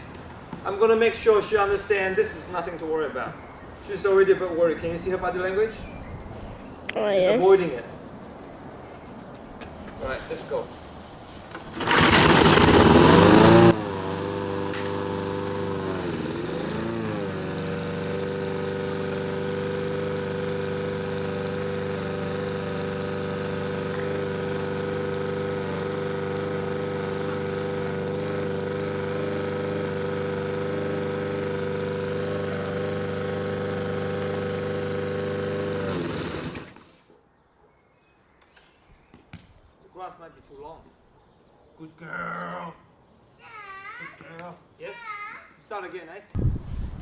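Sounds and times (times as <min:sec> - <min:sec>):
lawnmower engine running: 0:11.5 - 0:37.0.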